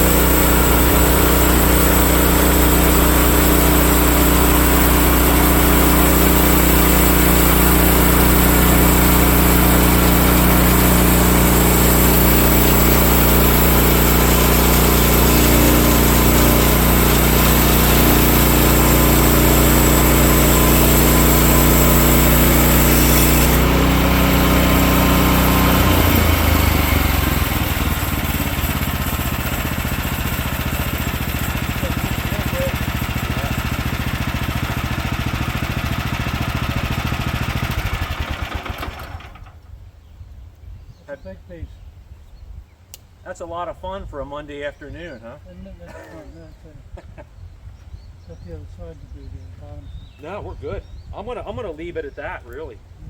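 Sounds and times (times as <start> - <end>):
band blade sawing log: 0.0 - 39.2
gas engine running: 0.0 - 39.6.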